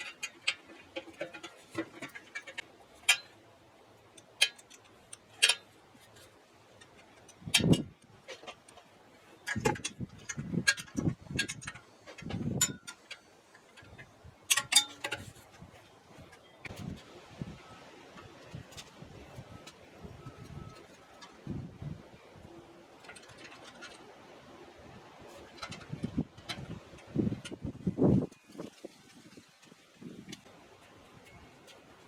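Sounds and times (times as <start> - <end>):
tools clicking and knocking: 0.0 - 3.4, 4.1 - 15.7, 25.3 - 27.7.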